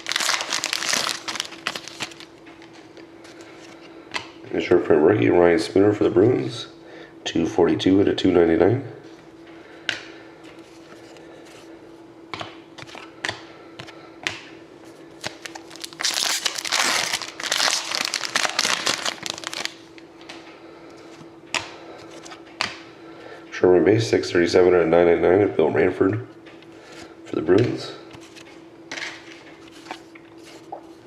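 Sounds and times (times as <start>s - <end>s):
wrapper crinkling and tearing: 0.0s - 2.3s, 15.2s - 20.0s
faint hum: 0.0s - 31.0s
cards tapping and clicking: 12.3s - 14.5s.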